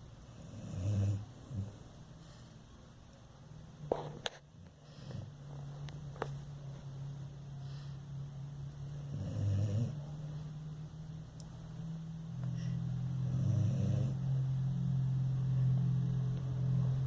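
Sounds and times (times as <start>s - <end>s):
steady low hum: 0.0s - 17.0s
dog snoring: 0.2s - 1.9s, 4.6s - 5.5s, 8.9s - 10.5s, 12.6s - 14.5s.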